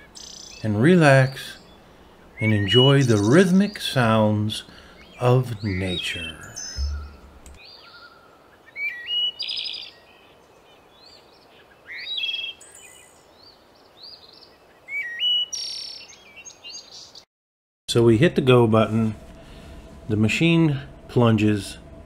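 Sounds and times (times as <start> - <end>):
birds chirping and whistling: 0.0 - 3.9, 4.7 - 10.3, 11.0 - 17.2
faint steady hiss: 0.0 - 15.0, 17.9 - 22.0.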